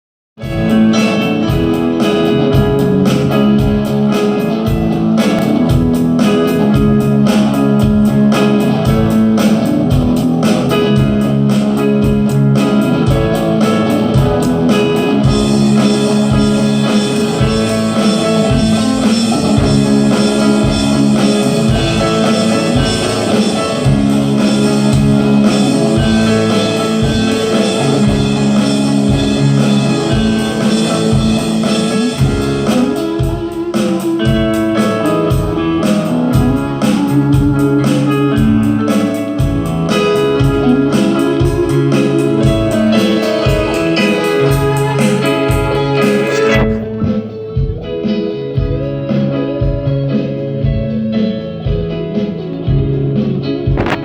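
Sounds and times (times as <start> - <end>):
music with a steady beat: 0.4 - 54.0.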